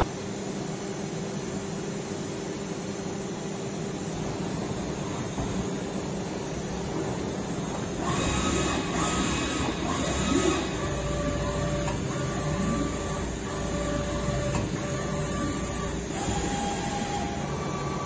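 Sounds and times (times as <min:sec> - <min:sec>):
high machine whine: 0:00.0 - 0:00.8, 0:02.6 - 0:18.0
machine humming: 0:06.0 - 0:18.0.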